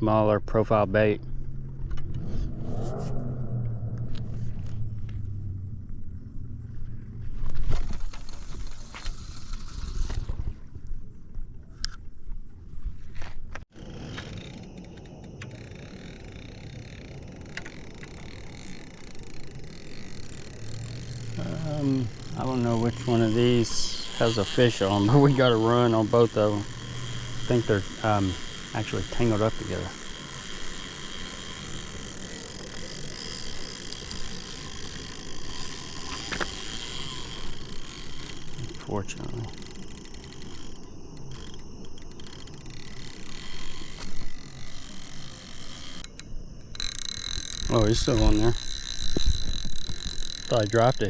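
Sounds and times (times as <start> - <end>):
low outdoor rumble: 0.0 - 9.6, 13.8 - 51.0
fishing reel whirring: 7.7 - 11.0, 13.7 - 51.0.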